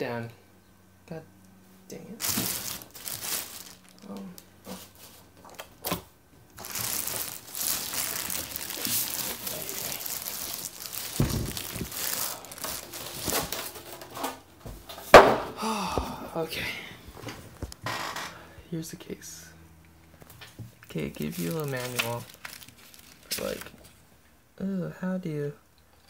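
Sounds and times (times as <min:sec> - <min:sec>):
packaging crinkling and rustling: 0:02.2 - 0:14.4, 0:20.2 - 0:24.0
knocks on packaging: 0:15.2 - 0:15.6.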